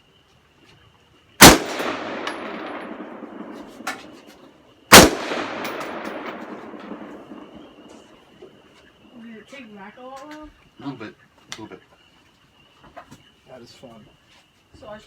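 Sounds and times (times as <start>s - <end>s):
rifle shots with echo: 1.4s - 4.3s, 4.9s - 8.1s.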